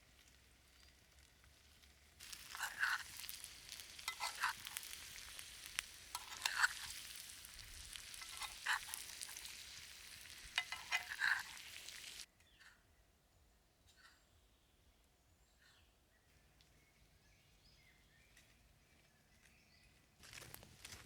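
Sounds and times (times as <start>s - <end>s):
food sizzling in a pan: 0.0s - 12.3s
utensil scraping a pan: 2.2s - 12.8s.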